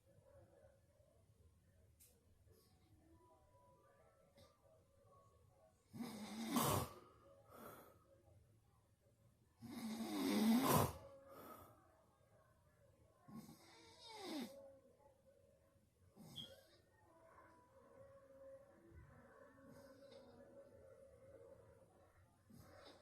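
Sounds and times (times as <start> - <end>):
soft breaths: 5.8 - 8.5, 9.6 - 14.8, 16.0 - 23.0
loud snoring: 6.0 - 7.0, 9.6 - 11.0.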